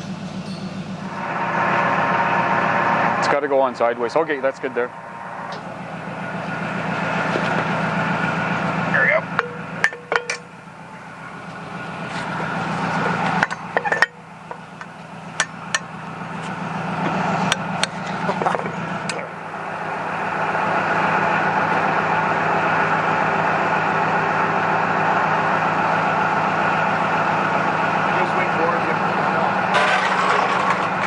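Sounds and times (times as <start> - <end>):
machine motor pulsing: 0.0 - 31.0
metal clinks and clanks: 13.4 - 15.8.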